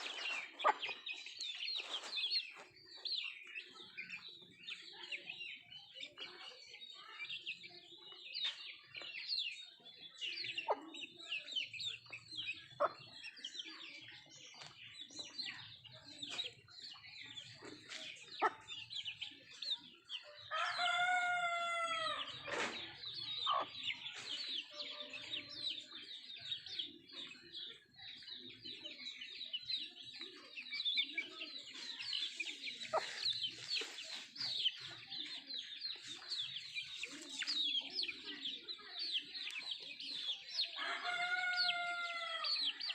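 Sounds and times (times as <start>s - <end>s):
chickens clucking: 0.0s - 42.9s
rooster crowing: 20.5s - 22.2s, 40.8s - 42.5s.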